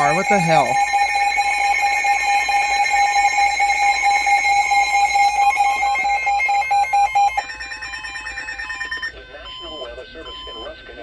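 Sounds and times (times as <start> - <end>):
weather radio alert tone: 0.0 - 0.9.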